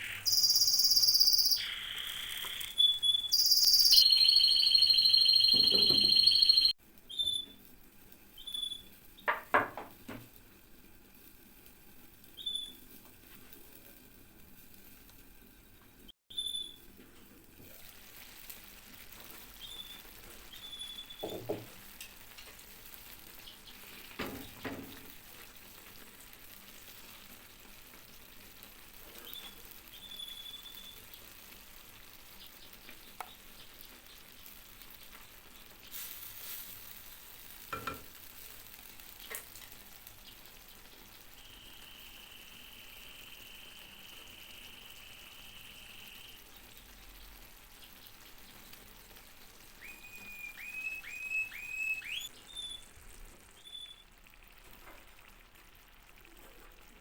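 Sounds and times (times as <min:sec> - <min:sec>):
high electronic tone: 0:00.0 - 0:06.7
rising chirps: 0:00.0 - 0:06.8
food frying sizzle: 0:00.0 - 0:57.0.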